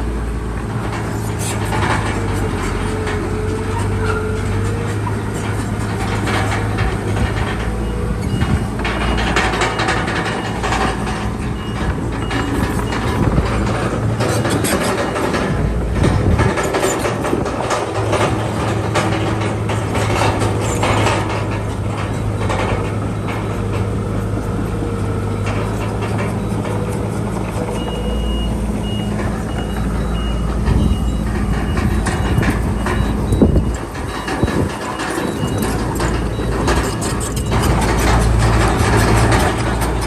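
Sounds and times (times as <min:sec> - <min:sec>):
bulldozer diesel engine running: 0:00.0 - 0:40.0
crawler tracks clanking: 0:00.0 - 0:40.0
reversing alarm beeping: 0:06.8 - 0:15.6, 0:25.2 - 0:39.8.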